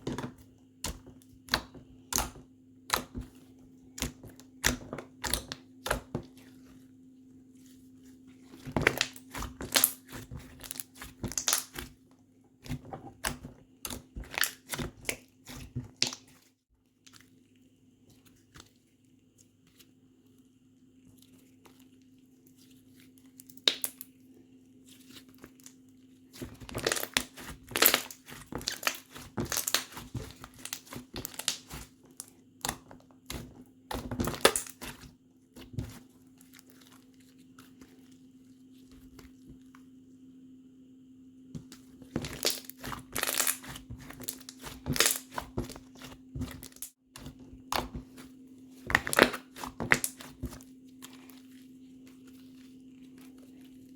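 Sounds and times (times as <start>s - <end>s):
faint steady hum: 0.0s - 53.9s
slime squishing sticky pops: 8.8s - 11.9s.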